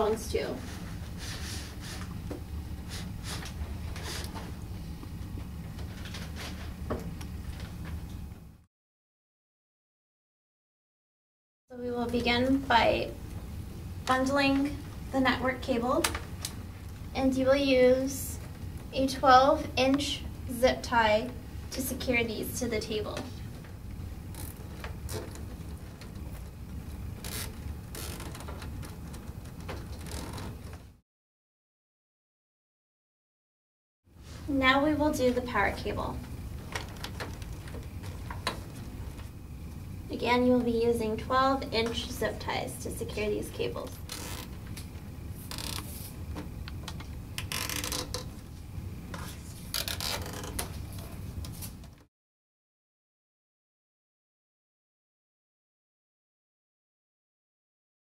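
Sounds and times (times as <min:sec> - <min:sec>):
cables rubbing: 0:23.6 - 0:31.0, 0:44.0 - 0:51.9
zip tie ratchet zipping: 0:27.2 - 0:28.6, 0:44.0 - 0:44.6, 0:45.4 - 0:46.0, 0:47.4 - 0:48.3, 0:49.6 - 0:50.7.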